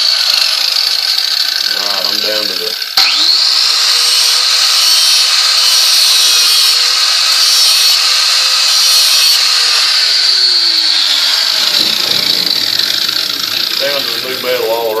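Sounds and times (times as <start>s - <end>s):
angle grinder grinding steel: 0.0s - 15.0s.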